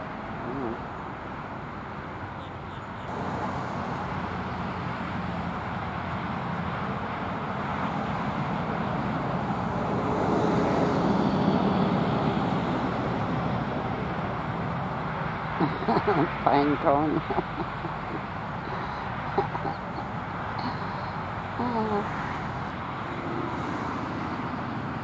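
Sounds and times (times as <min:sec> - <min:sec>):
motor vehicle passing: 0:02.9 - 0:25.0.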